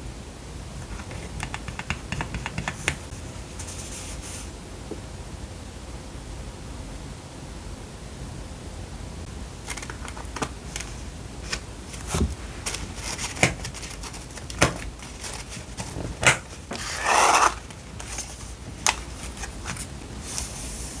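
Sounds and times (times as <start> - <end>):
light taps and clicks: 0.8 - 3.1
paper rustle: 2.5 - 4.5, 9.6 - 21.0.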